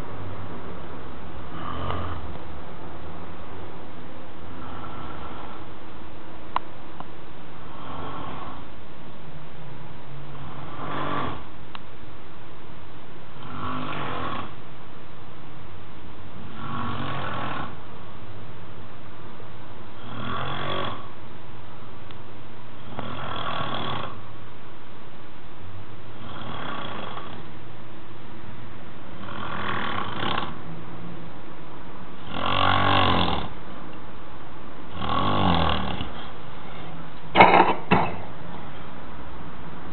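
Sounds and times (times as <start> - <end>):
man snoring: 1.5 - 2.4, 4.5 - 5.7, 7.7 - 8.7, 10.3 - 11.5, 13.4 - 14.6, 16.4 - 17.8, 20.0 - 21.1, 22.8 - 24.2, 26.2 - 27.4, 29.2 - 30.6, 32.2 - 33.6, 34.9 - 36.3.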